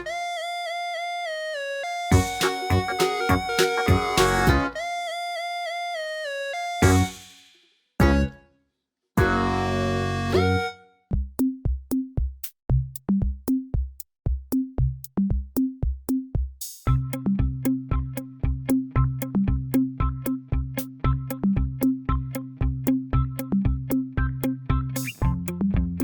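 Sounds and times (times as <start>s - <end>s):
upbeat electronic music: 0.0s - 0.3s, 2.1s - 4.9s, 6.8s - 7.4s, 8.0s - 8.4s, 9.2s - 10.7s
electronic drum-machine beat: 2.1s - 4.8s, 6.8s - 7.4s, 8.0s - 8.3s, 9.2s - 9.5s, 11.1s - 17.2s
short bass notes: 2.1s - 4.8s, 6.8s - 7.2s, 8.0s - 8.4s, 9.2s - 10.7s, 16.9s - 26.0s
fading chord: 8.0s - 8.4s, 9.2s - 10.8s.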